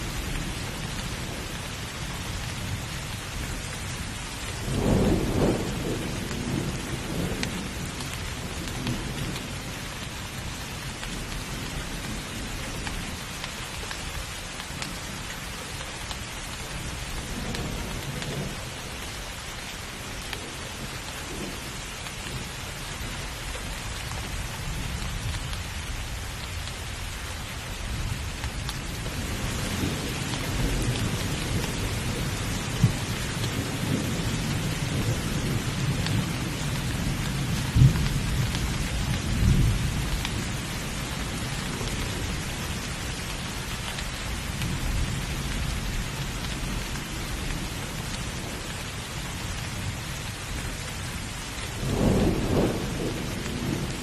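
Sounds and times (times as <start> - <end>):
steady rain: 0.0 - 54.0
thunder rumbling: 4.6 - 9.8, 28.9 - 43.6, 51.2 - 54.0.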